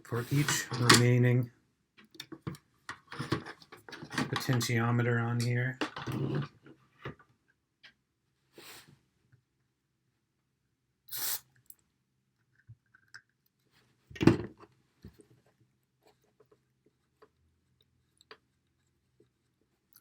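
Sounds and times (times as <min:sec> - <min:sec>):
aerosol spray hisses: 0:11.1 - 0:11.4.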